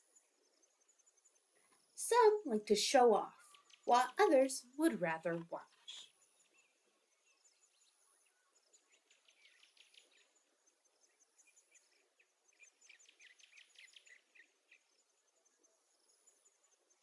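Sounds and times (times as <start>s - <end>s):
faint rapid high-pitched chirping: 0.0s - 17.0s.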